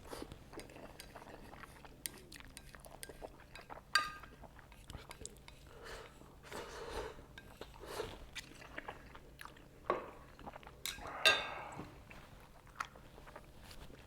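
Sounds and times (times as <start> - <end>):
wet chewing: 0.1 - 6.2.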